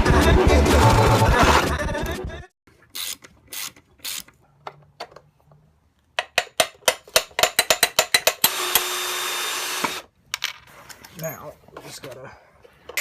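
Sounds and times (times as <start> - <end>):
power tool running: 8.4 - 10.1.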